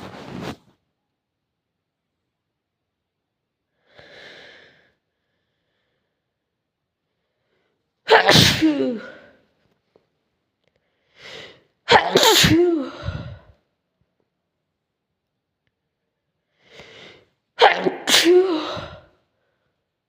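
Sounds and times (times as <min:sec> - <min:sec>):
faint inhale: 0:03.8 - 0:06.3, 0:16.5 - 0:17.3
person sneezing: 0:08.1 - 0:09.4, 0:11.8 - 0:13.5, 0:17.6 - 0:19.2.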